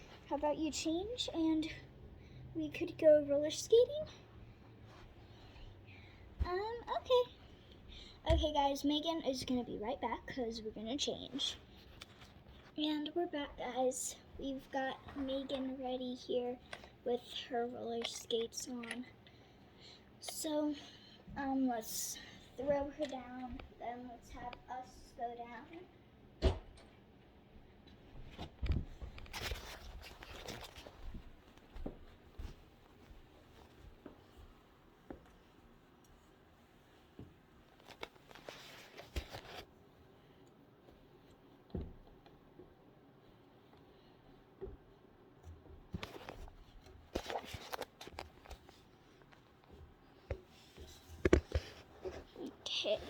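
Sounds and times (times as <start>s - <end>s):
rustling: 28.2s - 39.7s.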